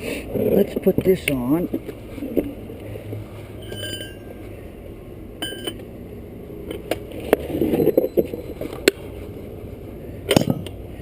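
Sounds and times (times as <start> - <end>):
steady low hum: 0.0 - 11.0
steel tool parts clinking: 3.6 - 4.2.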